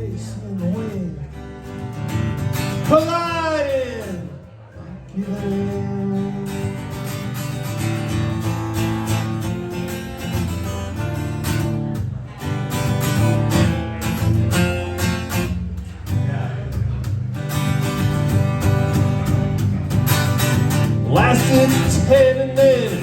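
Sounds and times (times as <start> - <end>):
acoustic guitar strumming: 0.0 - 23.0
person singing: 21.1 - 23.0.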